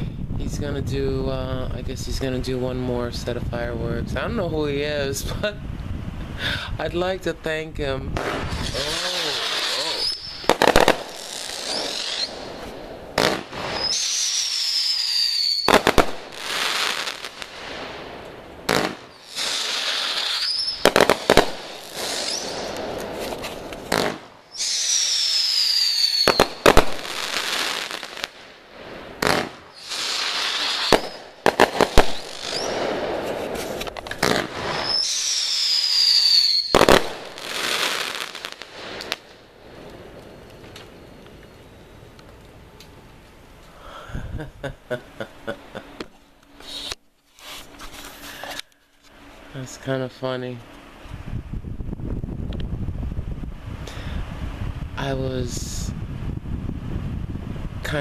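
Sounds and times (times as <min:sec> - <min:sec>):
fireworks bangs: 0:08.1 - 0:41.0
fireworks hissing: 0:08.2 - 0:41.2, 0:46.6 - 0:48.6
fireworks whistling: 0:08.2 - 0:42.0, 0:46.6 - 0:47.6.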